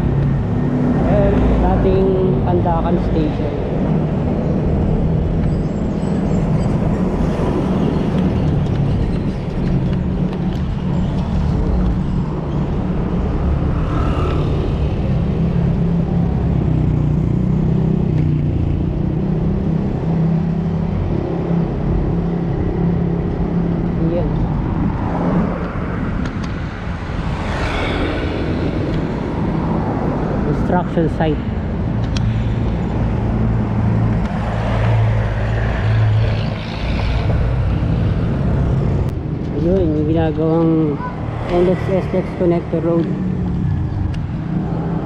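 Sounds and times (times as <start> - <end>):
road rumble: 0.0 - 45.0.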